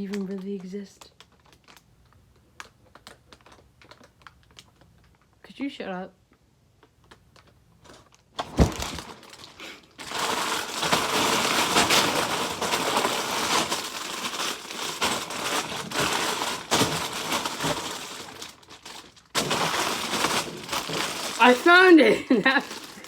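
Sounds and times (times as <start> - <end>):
plastic bags crinkling: 0.0 - 5.4, 6.7 - 23.0
thump: 8.4 - 9.0.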